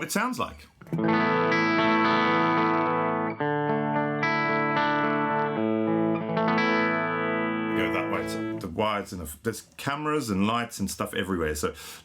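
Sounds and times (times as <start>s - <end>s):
electric guitar chords: 0.8s - 8.6s.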